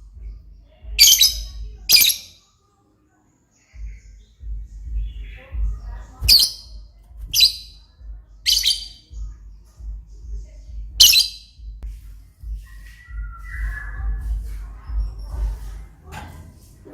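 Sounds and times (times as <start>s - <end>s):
lovebird shrieking: 8.5s - 9.0s, 11.0s - 11.4s.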